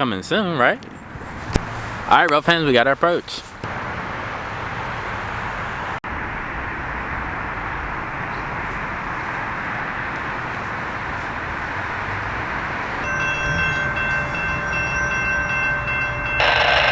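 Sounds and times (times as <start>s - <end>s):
freight train rumbling: 3.7s - 16.9s.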